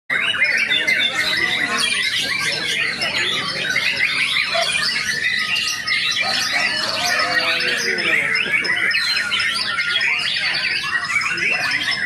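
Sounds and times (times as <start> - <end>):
bird singing whistles and chatter: 0.1 - 12.0.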